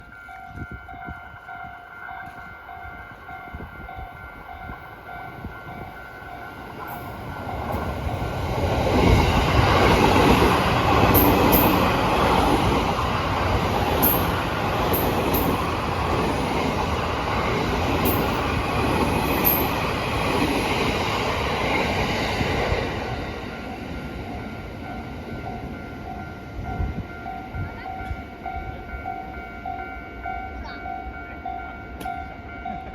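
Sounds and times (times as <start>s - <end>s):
electric train passing: 0.0s - 32.9s
sharp clicks of train: 7.7s - 16.2s, 17.8s - 22.7s, 31.9s - 32.9s.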